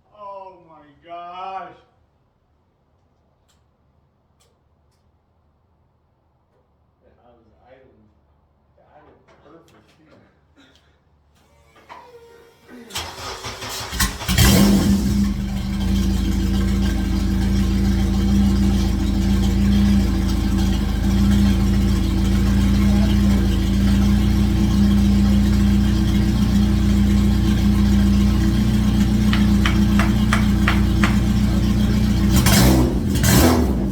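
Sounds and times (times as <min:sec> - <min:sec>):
car engine cranking: 0:12.9 - 0:33.9
car engine idling: 0:12.9 - 0:33.9.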